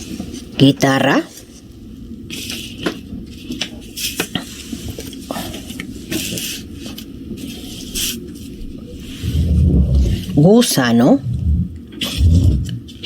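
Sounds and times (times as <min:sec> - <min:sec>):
rustling: 0:07.5 - 0:10.4.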